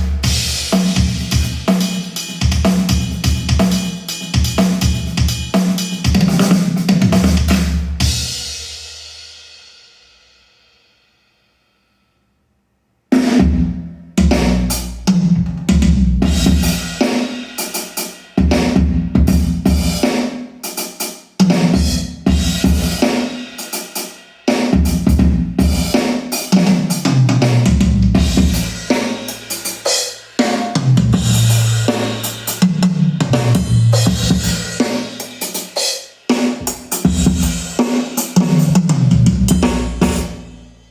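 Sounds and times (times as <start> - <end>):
drum-heavy music: 0.0 - 9.8, 13.2 - 40.9.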